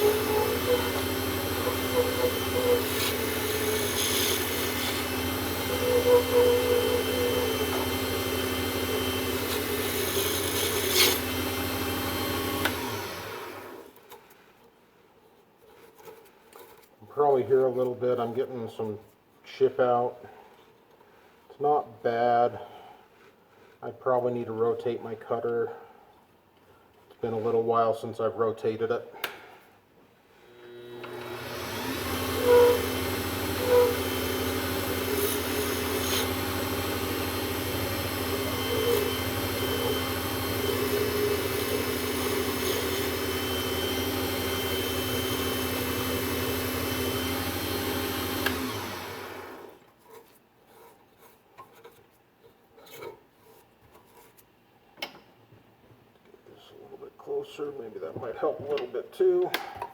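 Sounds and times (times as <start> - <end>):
lathe humming: 0.0 - 13.8, 30.6 - 49.8
turning tool scraping: 0.0 - 14.5, 30.4 - 54.5.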